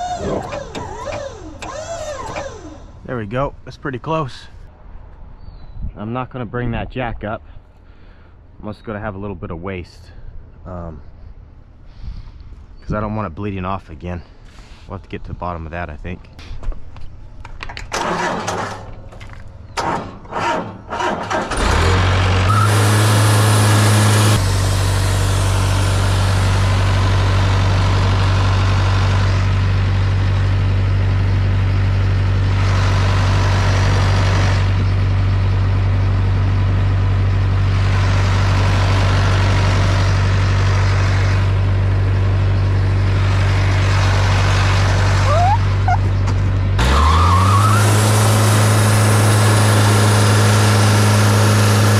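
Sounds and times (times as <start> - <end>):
sawmill engine running at high speed: 21.5 - 45.9, 46.8 - 51.9.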